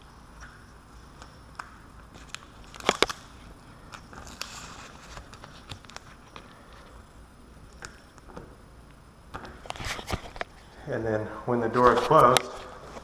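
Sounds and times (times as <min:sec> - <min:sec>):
adhesive tape crackling: 0:01.2 - 0:06.9.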